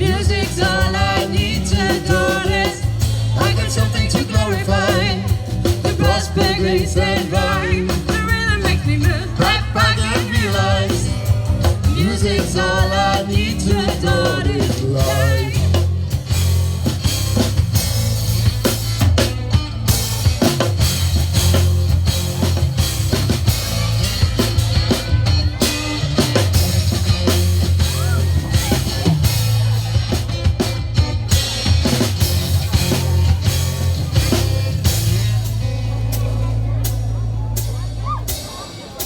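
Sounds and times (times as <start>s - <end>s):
drum kit beat: 0.0s - 39.0s
deep sustained bass: 31.9s - 38.1s.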